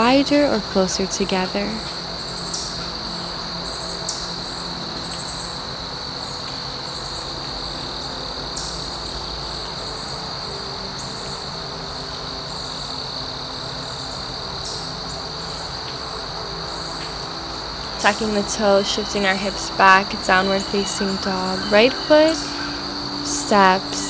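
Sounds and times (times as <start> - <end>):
insect trilling: 17.8 - 24.0.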